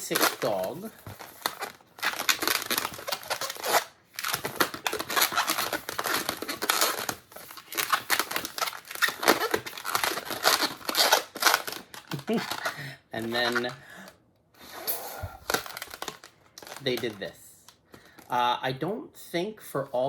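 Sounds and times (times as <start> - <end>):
balloon squeaky rubbing: 0.0 - 13.8, 14.6 - 16.8.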